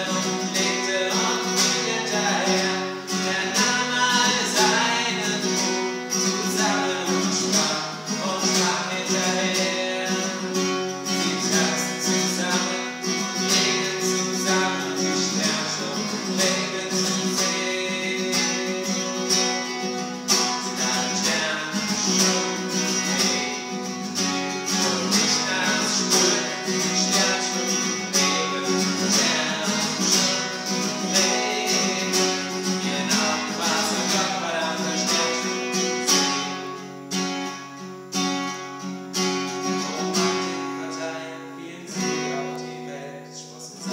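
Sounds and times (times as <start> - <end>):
acoustic guitar strumming: 0.0 - 43.9.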